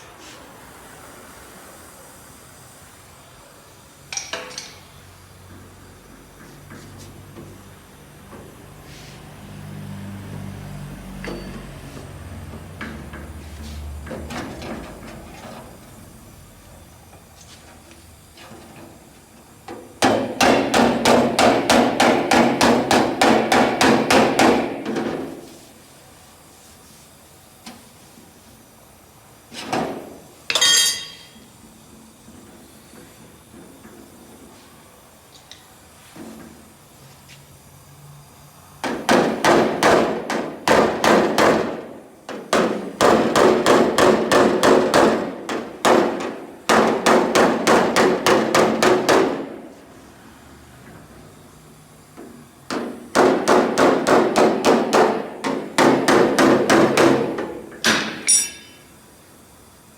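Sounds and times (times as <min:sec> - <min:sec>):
hammer striking sheet metal: 0:20.0 - 0:25.2, 0:30.5 - 0:31.4, 0:52.7 - 0:58.9.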